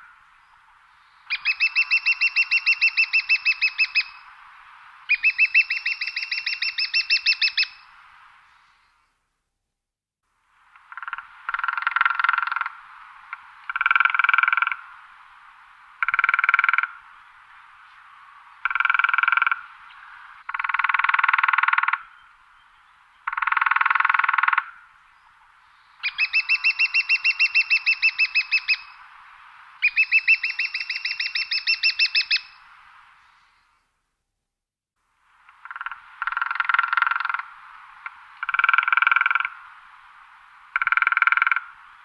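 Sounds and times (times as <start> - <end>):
woodpecker drumming on wood: 10.8 - 14.8, 16.0 - 16.9, 18.6 - 19.6, 35.5 - 39.6, 40.7 - 41.7.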